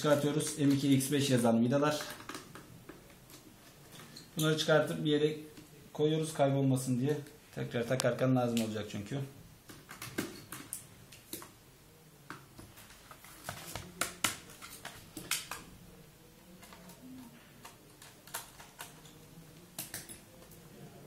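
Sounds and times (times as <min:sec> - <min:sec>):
plastic case being handled: 0:12.3 - 0:15.6.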